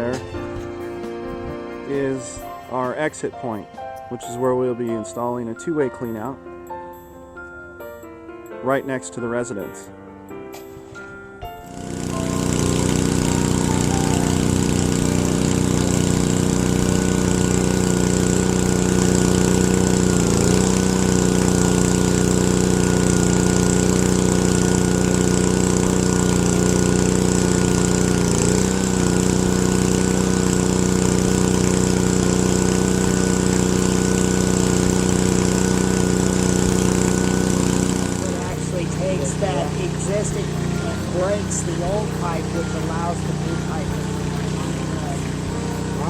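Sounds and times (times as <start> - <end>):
engine running under load: 11.6 - 46.0.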